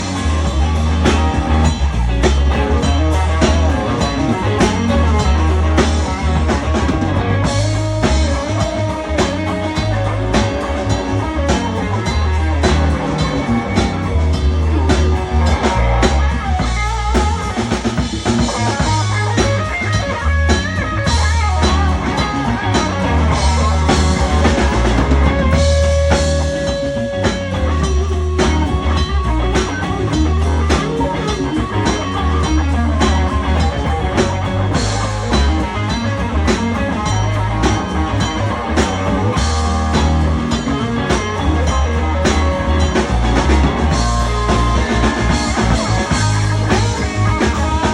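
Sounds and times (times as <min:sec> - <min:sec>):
bass guitar: 0:00.0 - 0:47.9
drums: 0:00.0 - 0:47.9
electric blues guitar solo: 0:00.0 - 0:47.9.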